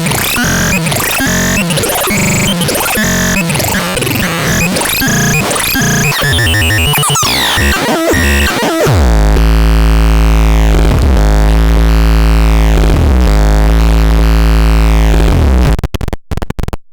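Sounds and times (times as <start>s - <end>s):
glitchy synthesizer tones: 0.0s - 9.4s
loud low synthesizer drone: 4.5s - 15.7s.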